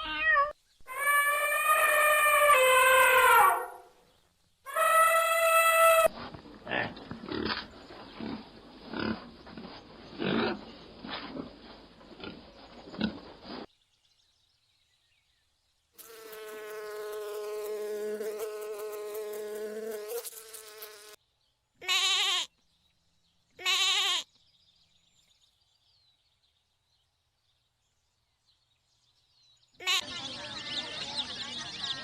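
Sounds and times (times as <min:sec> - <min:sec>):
noisy animal sound: 0:00.0 - 0:04.0
faint high insect-like hiss: 0:13.7 - 0:23.2
sheep bleating: 0:21.8 - 0:22.5, 0:23.6 - 0:24.2.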